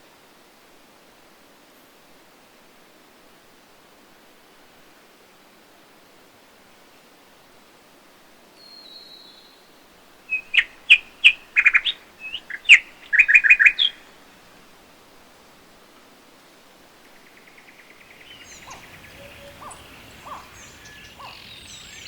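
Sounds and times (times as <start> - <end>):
faint steady hiss: 0.0 - 22.0
songbird chirps and trills: 10.3 - 14.2, 17.0 - 22.0.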